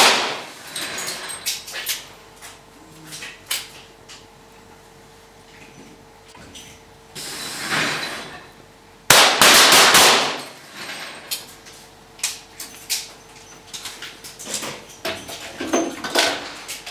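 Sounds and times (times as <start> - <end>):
pistol shots: 0.0 - 0.5, 9.1 - 10.4.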